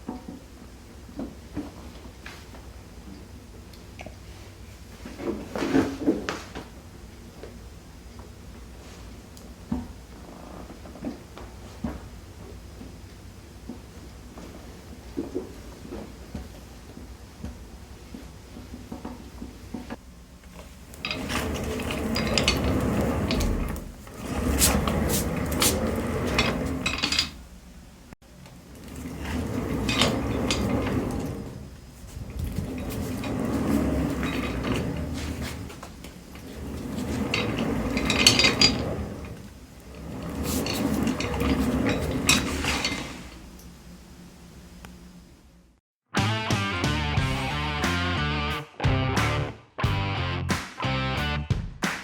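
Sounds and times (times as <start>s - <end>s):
chair casters rolling and rattling: 9.7s - 13.0s, 20.6s - 27.4s, 28.4s - 43.8s.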